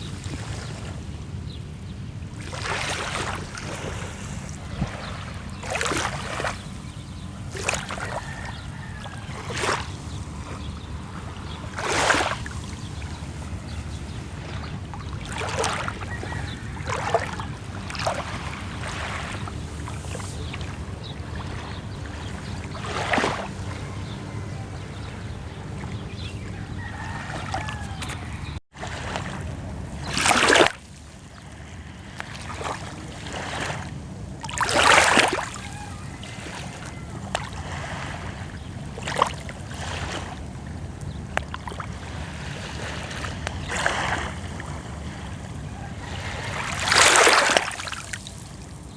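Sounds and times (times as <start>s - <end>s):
steady low rumble: 0.0s - 34.6s
sea waves lapping at shore: 0.0s - 48.9s.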